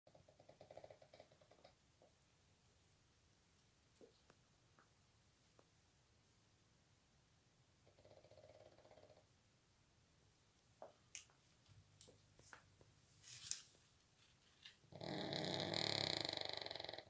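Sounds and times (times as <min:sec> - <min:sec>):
dog snoring: 0:00.1 - 0:01.8, 0:07.8 - 0:09.3, 0:14.9 - 0:17.0.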